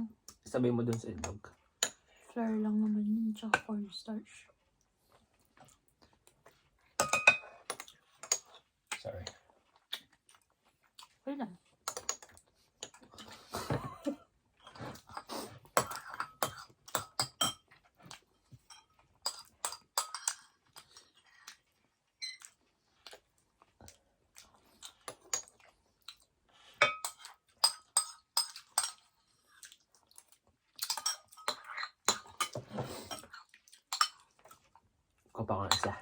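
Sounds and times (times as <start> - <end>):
chewing: 4.6 - 7.0, 7.6 - 13.5, 17.7 - 27.6, 28.4 - 35.3
spoons clinking against bowls: 7.0 - 8.5, 11.9 - 13.8, 15.2 - 17.6, 18.6 - 20.9, 26.8 - 29.0, 30.8 - 33.3, 33.9 - 34.2, 35.6 - 36.0.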